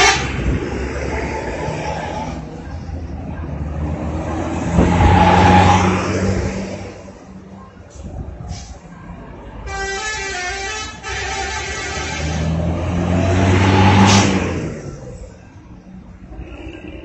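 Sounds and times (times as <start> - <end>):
musical multi-tone horn: 0.0 - 0.4, 9.7 - 12.7
heavy vehicle engine passing: 0.0 - 9.7, 11.2 - 17.0.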